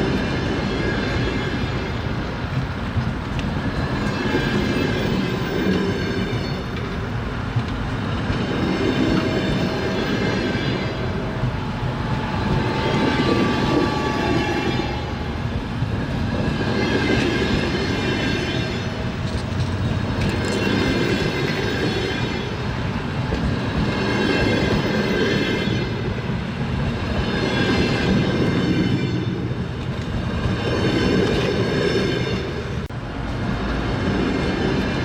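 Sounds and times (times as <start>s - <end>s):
train wheels clattering on rails: 0.0s - 35.0s
high ringing tone: 10.2s - 16.1s.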